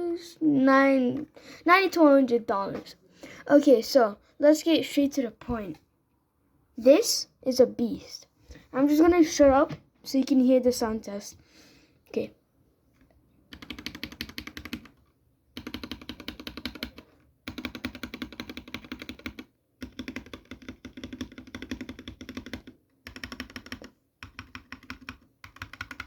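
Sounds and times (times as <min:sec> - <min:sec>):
mechanical keyboard typing: 0:13.5 - 0:15.0, 0:15.6 - 0:26.0.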